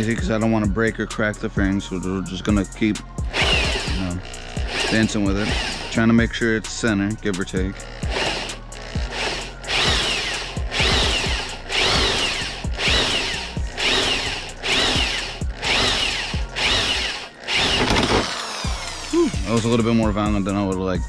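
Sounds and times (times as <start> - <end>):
electric drill boring plastic: 3.2 - 6.4, 7.6 - 19.8
drill bit catching plastic: 9.7 - 18.6.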